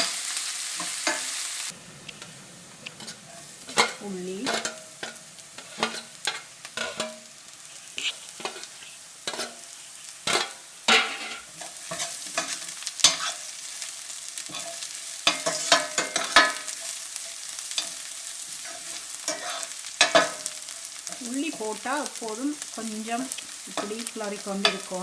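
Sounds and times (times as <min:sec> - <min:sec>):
garlic and onions sizzling in oil: 0:00.0 - 0:25.0
spoon scraping pan with clinks: 0:02.9 - 0:07.3, 0:08.0 - 0:13.5, 0:14.4 - 0:21.2, 0:23.4 - 0:25.0.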